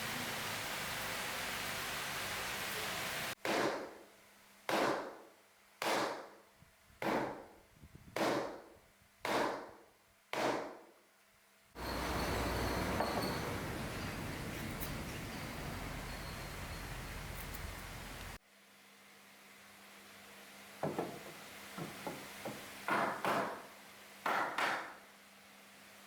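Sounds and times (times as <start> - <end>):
steady hiss: 0.0 - 3.4, 11.8 - 18.4.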